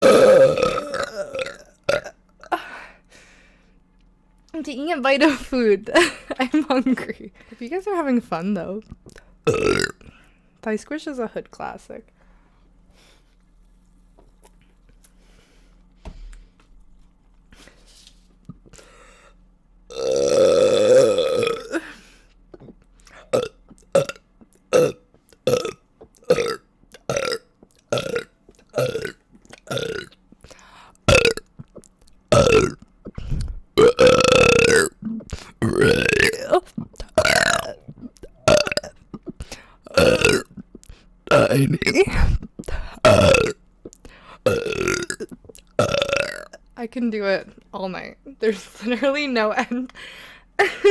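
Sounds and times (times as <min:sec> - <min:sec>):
long loud burp: 0:00.0 - 0:02.2, 0:09.5 - 0:10.0, 0:19.9 - 0:21.8, 0:23.3 - 0:30.1, 0:31.1 - 0:31.4, 0:32.3 - 0:32.8, 0:33.8 - 0:38.9, 0:39.9 - 0:40.6, 0:41.3 - 0:42.0, 0:43.0 - 0:43.6, 0:44.5 - 0:46.5.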